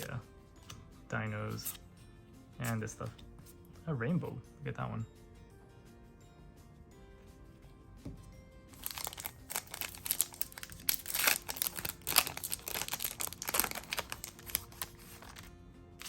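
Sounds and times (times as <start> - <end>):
wrapper crinkling and tearing: 8.8 - 15.5.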